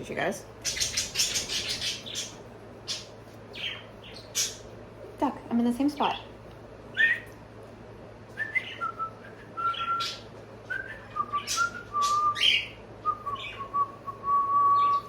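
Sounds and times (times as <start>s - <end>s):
bird chirping: 0.6s - 4.7s, 8.4s - 15.0s
pet bird whistling: 6.9s - 7.3s, 8.4s - 15.0s.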